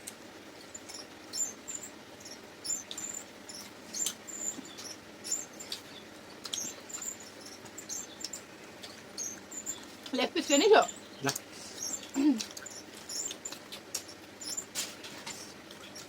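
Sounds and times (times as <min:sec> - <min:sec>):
chewing and lip smacks: 0:02.8 - 0:10.2, 0:11.2 - 0:16.0.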